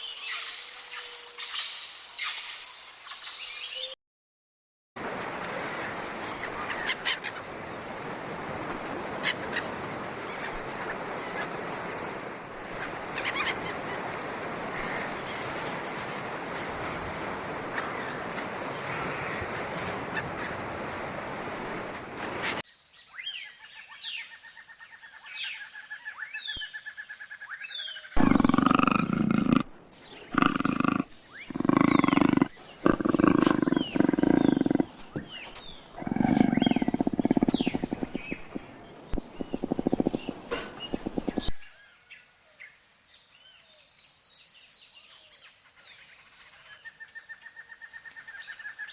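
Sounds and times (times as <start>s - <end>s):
large animal calling loudly: 28.2s - 29.7s, 30.3s - 38.6s, 39.2s - 41.5s
steady rush of noise: 28.2s - 41.6s
birds chirping: 28.2s - 41.7s.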